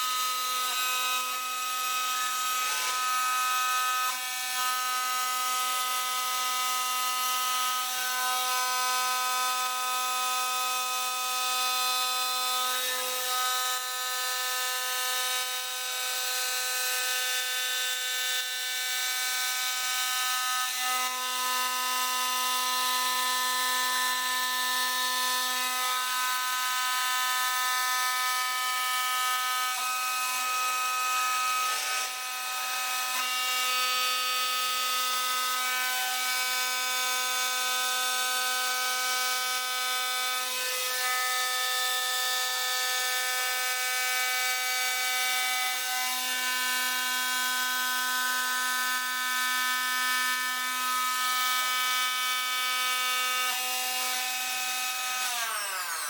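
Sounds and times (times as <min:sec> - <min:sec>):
stone-working machine whine: 0:00.0 - 0:09.3.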